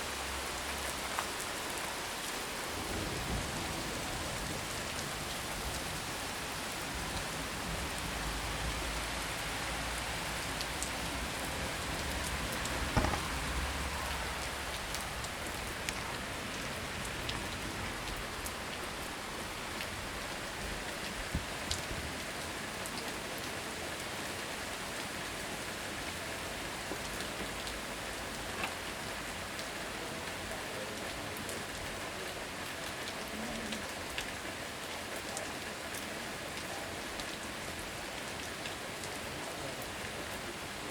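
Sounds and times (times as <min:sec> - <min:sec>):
intense rain falling: 0:00.0 - 0:40.9
sharp knock: 0:13.0 - 0:14.2.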